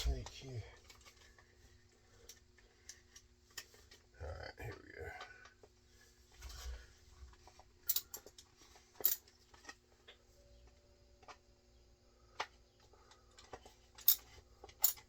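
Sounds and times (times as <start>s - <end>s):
faint steady hum: 0.0s - 15.0s
gun parts clicking: 7.9s - 8.4s, 13.4s - 15.0s.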